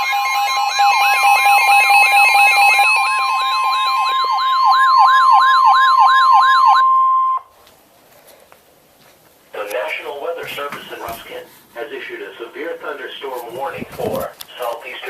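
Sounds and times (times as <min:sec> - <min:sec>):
steady alarm tone: 0:00.0 - 0:07.5
sweeping siren-like tone: 0:01.0 - 0:07.4.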